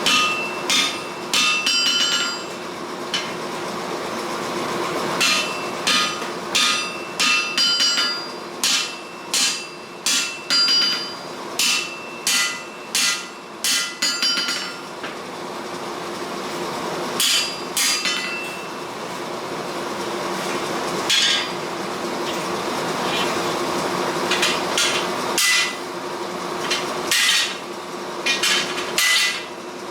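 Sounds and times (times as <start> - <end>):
hammer striking hot steel: 0.0 - 3.4, 5.2 - 14.9, 17.2 - 18.7, 21.1 - 21.6, 24.3 - 25.9, 26.6 - 29.6
steady hum: 0.0 - 29.9.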